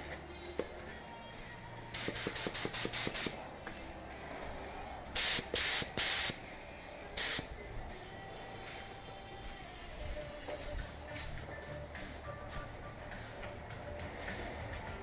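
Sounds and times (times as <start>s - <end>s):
spray gun hissing: 2.0s - 3.4s, 5.2s - 6.4s, 7.2s - 7.5s
spray gun trigger click: 2.0s - 3.4s.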